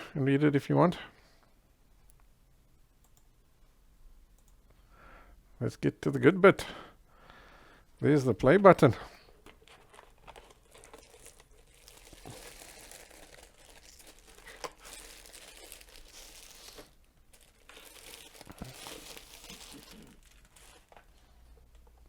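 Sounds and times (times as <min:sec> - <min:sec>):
packaging crinkling and rustling: 0:09.4 - 0:21.4.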